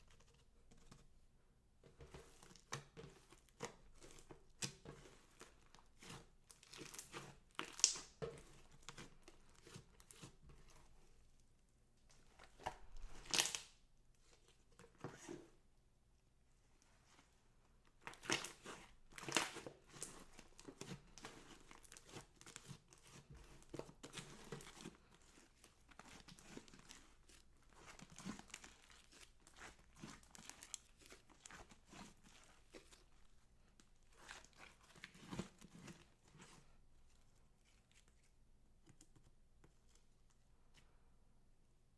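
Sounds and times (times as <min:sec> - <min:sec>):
slime squelching and crackling: 0:02.6 - 0:10.4, 0:12.3 - 0:13.8, 0:17.9 - 0:36.2.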